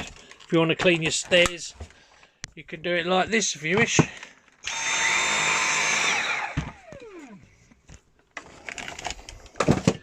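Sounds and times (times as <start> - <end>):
cordless vacuum motor whining: 4.6 - 7.8.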